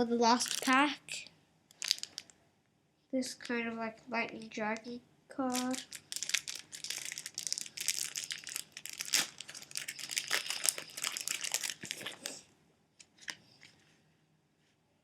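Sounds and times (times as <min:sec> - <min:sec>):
foil wrapper tearing and crinkling: 0:00.4 - 0:00.8, 0:01.8 - 0:02.3, 0:05.5 - 0:12.4.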